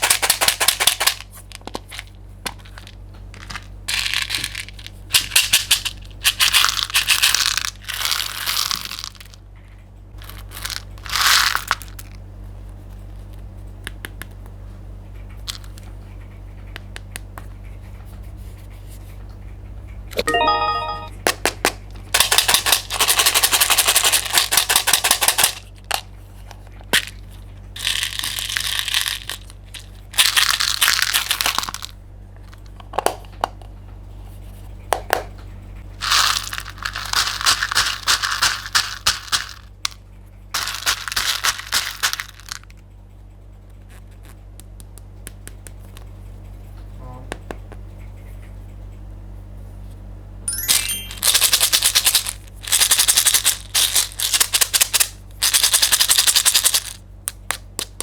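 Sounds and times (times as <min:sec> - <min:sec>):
low steady hum: 0:00.0 - 0:58.0
stepped chiming tones: 0:20.2 - 0:21.2, 0:50.5 - 0:51.3.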